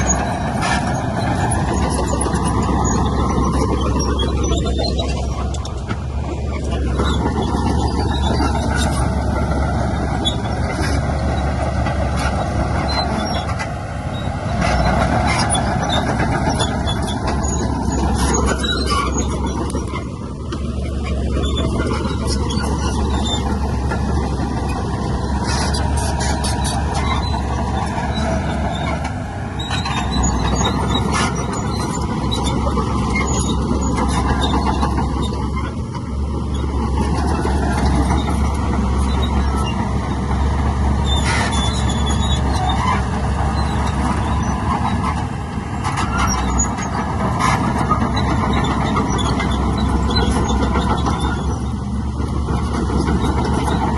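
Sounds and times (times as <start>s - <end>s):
diesel machinery running: 0.0s - 53.9s
high squeals: 21.0s - 35.7s, 37.3s - 45.2s.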